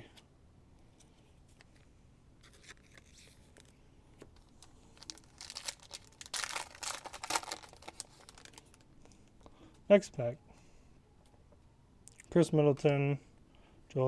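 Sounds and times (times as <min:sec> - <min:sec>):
card pack wrapper crinkling and tearing: 0:02.4 - 0:03.7, 0:04.4 - 0:08.8.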